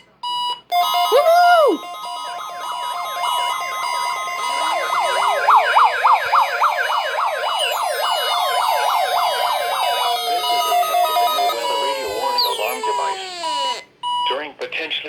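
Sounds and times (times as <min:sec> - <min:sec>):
steady alarm tone: 0:00.3 - 0:14.4
fast siren yelp: 0:00.7 - 0:13.8
slow siren wail: 0:00.7 - 0:14.0
high gliding tones: 0:00.8 - 0:13.8.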